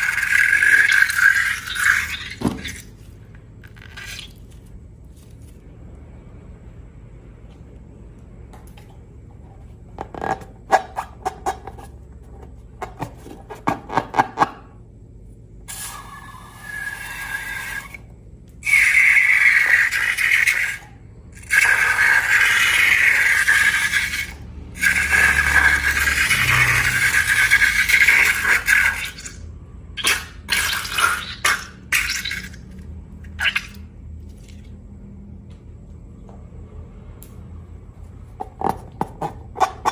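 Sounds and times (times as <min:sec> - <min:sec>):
liquid pouring into container: 0:00.0 - 0:04.6, 0:21.4 - 0:34.7.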